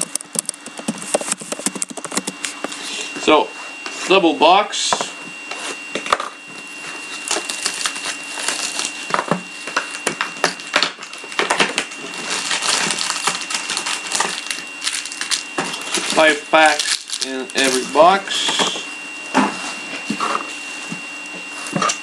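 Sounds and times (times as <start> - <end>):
cardboard clicks and scrapes: 0.0 - 2.7
plastic wrapping crinkling: 7.1 - 18.0.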